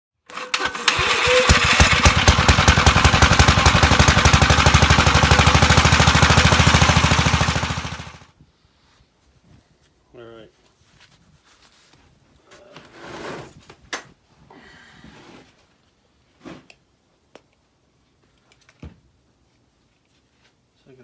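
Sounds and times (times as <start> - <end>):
small engine running: 0.3 - 8.3.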